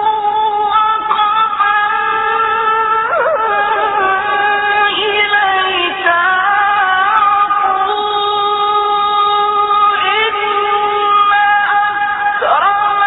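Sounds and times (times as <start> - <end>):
man chanting recitation: 0.1 - 13.0.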